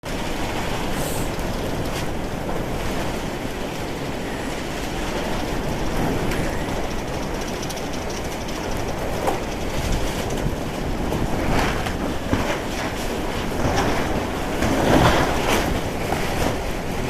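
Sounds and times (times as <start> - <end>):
wind buffeting microphone: 0.0 - 17.0
blizzard wind rushing hiss: 0.1 - 17.0.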